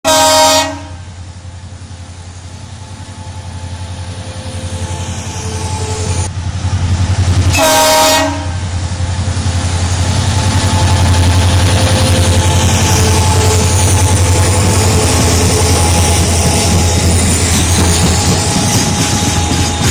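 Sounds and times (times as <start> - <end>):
locomotive horn blast: 0.0 - 1.1, 7.5 - 8.6
diesel locomotive engines throbbing: 0.1 - 19.9.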